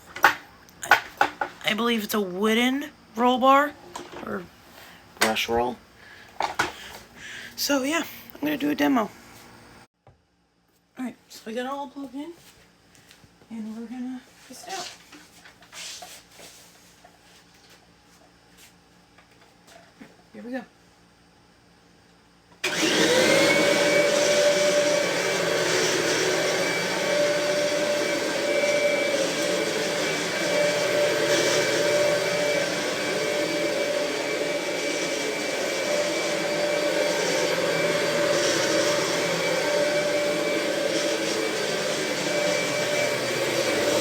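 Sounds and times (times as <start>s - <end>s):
vacuum cleaner motor whine: 0.1s - 9.9s, 21.2s - 44.0s.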